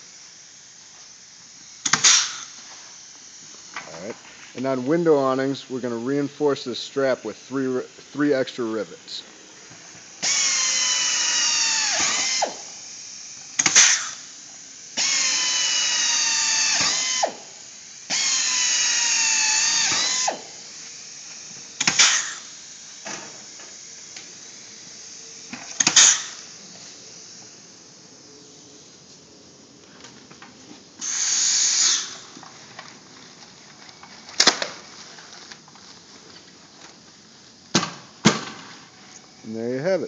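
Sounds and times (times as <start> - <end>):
power drill whining: 9.6 - 28.2, 31.0 - 32.9.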